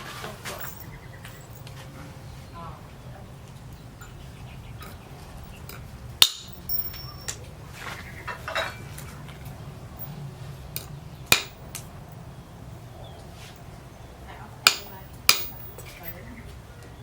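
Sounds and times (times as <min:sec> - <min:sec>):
steady low hum: 0:00.0 - 0:17.0
sharp metallic clinks and knocks: 0:00.4 - 0:02.1, 0:03.7 - 0:07.6, 0:08.2 - 0:12.3, 0:14.6 - 0:16.5.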